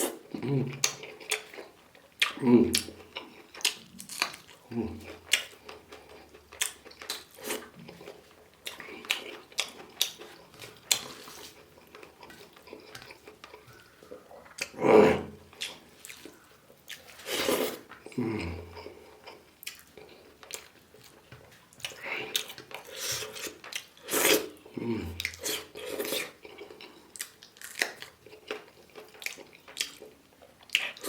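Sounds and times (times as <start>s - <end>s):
mouth chewing wetly: 0.0s - 31.0s.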